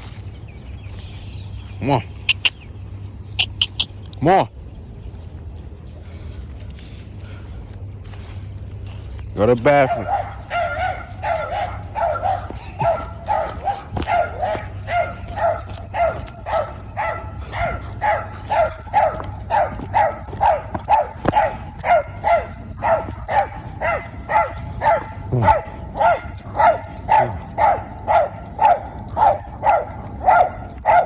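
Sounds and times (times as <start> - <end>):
dog barking: 9.6 - 31.0.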